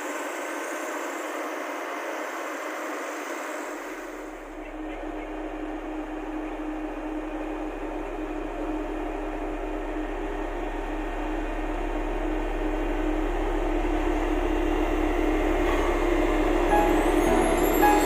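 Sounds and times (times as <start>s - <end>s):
diesel engine running: 3.7s - 18.0s.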